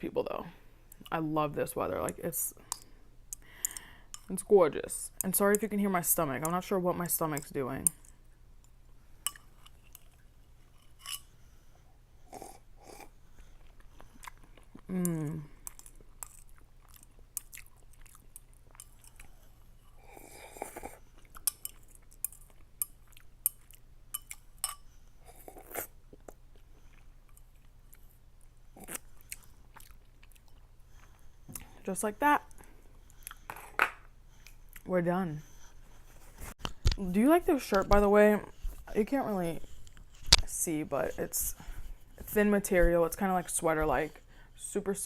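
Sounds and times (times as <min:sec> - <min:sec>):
breathy eating sounds: 0:02.5 - 0:04.4, 0:08.9 - 0:37.0, 0:38.2 - 0:42.4
wet chewing sounds: 0:12.4 - 0:31.8.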